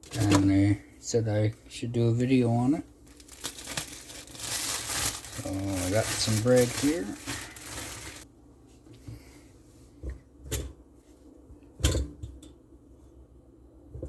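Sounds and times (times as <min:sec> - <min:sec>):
plastic bag crinkling: 0:03.0 - 0:08.3.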